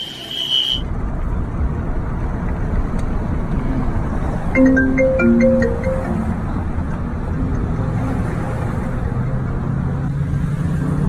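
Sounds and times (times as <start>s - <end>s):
short tune of pitched notes: 4.6s - 6.8s.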